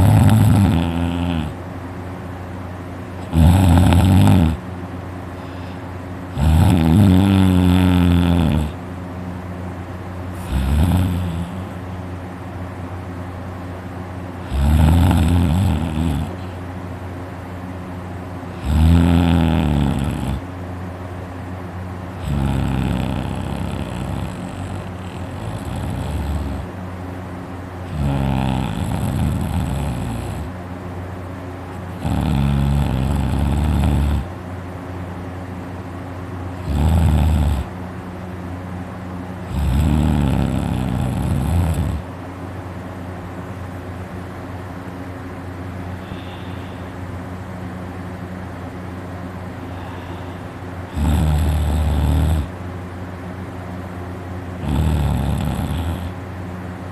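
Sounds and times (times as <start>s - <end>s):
man snoring loudly: 0.0s - 1.6s, 3.2s - 4.6s, 6.3s - 8.8s, 10.3s - 11.8s, 14.4s - 16.5s, 18.5s - 20.5s, 22.1s - 26.7s, 27.8s - 30.6s, 31.8s - 34.3s, 36.6s - 37.7s, 39.4s - 42.1s, 46.0s - 46.9s, 49.7s - 52.6s, 54.6s - 56.2s
steady low hum: 0.0s - 56.9s.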